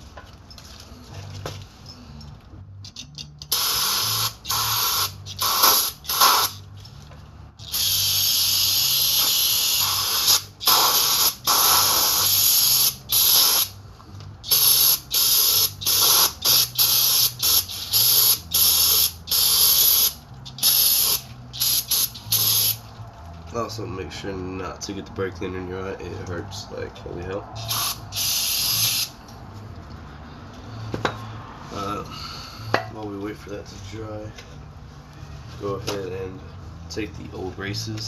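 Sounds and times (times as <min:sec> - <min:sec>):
aerosol spray bursts: 0:03.5 - 0:06.6, 0:07.7 - 0:13.7, 0:14.5 - 0:22.8, 0:27.6 - 0:29.1.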